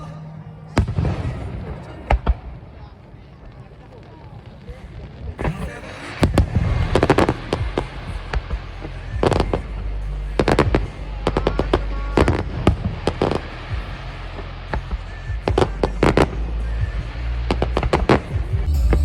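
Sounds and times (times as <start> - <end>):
fireworks bursting with sharp bangs: 0.8 - 9.6
steady low rumble: 6.3 - 19.0.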